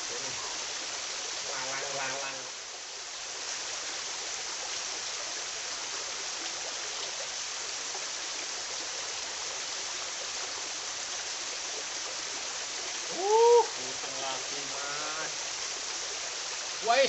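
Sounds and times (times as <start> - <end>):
river water flowing over rocks: 0.0 - 17.0.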